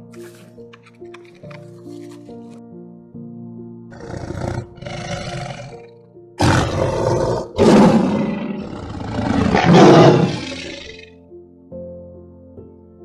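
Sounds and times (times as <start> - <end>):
background music: 0.0 - 13.0
large animal roaring: 3.9 - 11.0.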